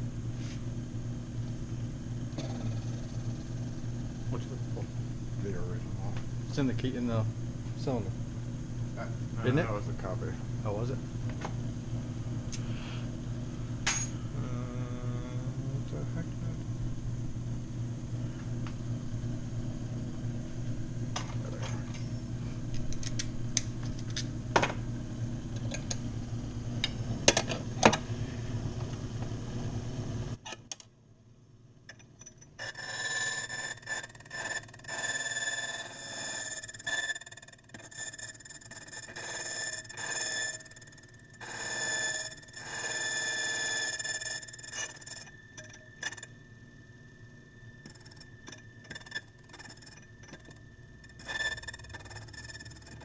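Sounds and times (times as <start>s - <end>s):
electric motor humming: 0.7s - 30.4s
pulsing high-pitched ringing tone: 2.0s - 11.2s, 32.2s - 53.0s.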